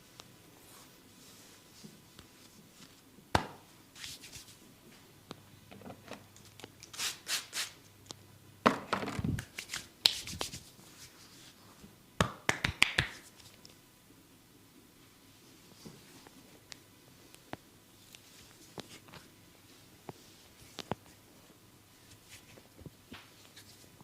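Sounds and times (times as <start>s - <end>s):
hands slapping bare skin: 3.3s - 4.4s, 9.4s - 10.6s, 12.2s - 13.5s.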